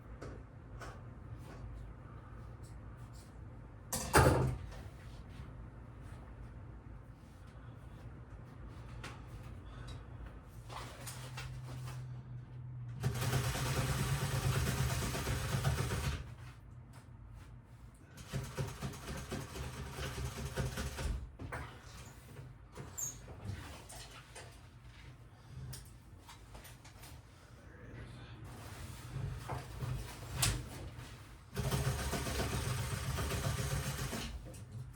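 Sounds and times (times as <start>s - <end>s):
sewing machine motor humming: 13.0s - 16.2s, 31.6s - 34.4s
sewing machine stitching: 13.0s - 16.3s, 18.2s - 21.2s, 31.5s - 34.5s.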